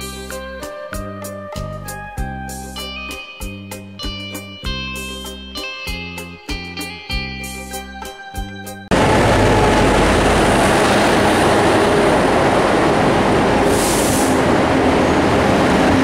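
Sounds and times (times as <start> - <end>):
guitar music: 0.0 - 12.5
moving vehicle running noise: 8.9 - 16.0.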